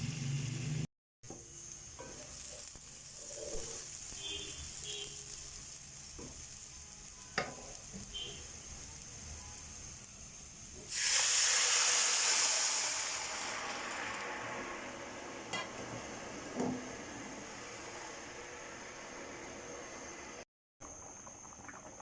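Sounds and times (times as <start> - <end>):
pot hissing and sizzling: 0.0 - 22.0.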